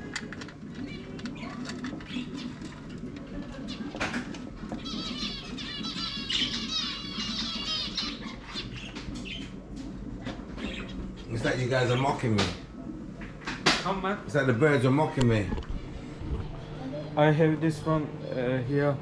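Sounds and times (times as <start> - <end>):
caged birds chirping rapidly: 0.8 - 9.7, 10.3 - 12.4.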